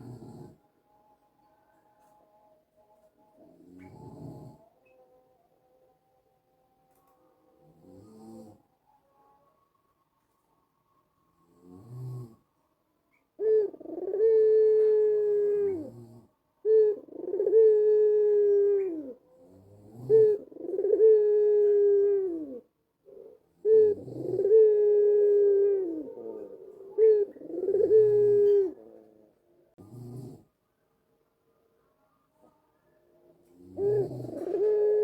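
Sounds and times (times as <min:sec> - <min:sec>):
dove cooing: 0:00.0 - 0:00.6, 0:03.4 - 0:05.0, 0:13.1 - 0:29.2, 0:33.5 - 0:35.0.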